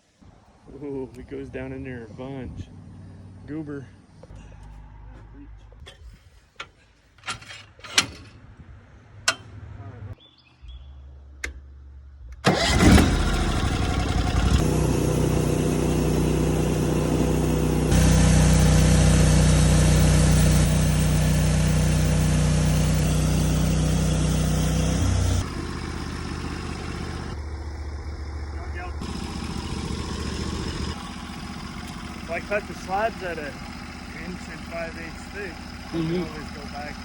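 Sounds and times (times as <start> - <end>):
sawmill gasoline engine running: 12.4 - 37.0.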